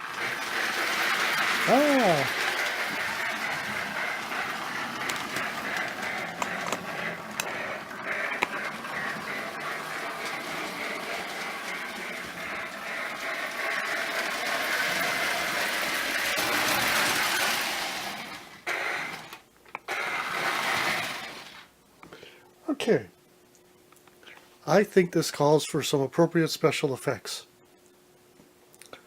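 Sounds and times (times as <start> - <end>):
wheels clicking on track: 0.0 - 19.4, 20.2 - 21.7
toy train motor whirring: 0.0 - 21.7.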